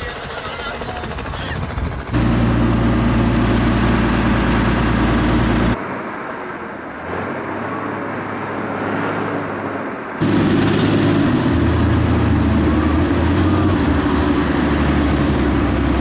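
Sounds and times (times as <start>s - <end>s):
tracked vehicle engine running: 0.0s - 5.8s, 10.0s - 16.0s.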